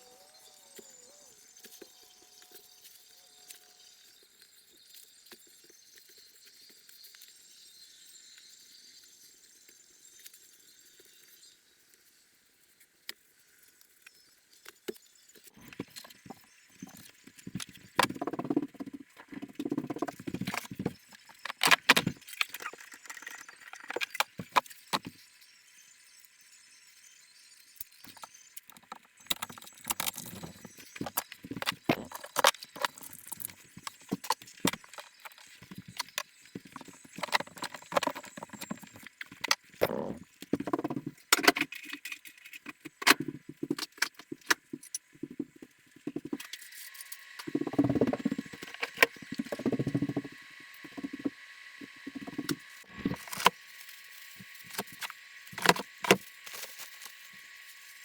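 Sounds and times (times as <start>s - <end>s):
hard objects clicking and clinking: 28.1s - 46.6s.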